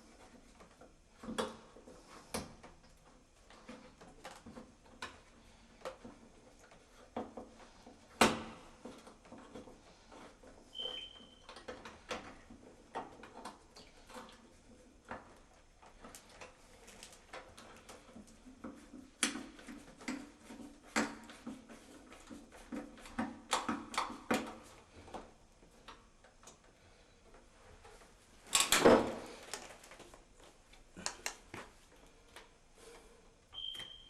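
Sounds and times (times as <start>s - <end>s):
brief high squeak: 10.7s - 11.4s, 33.6s - 34.0s.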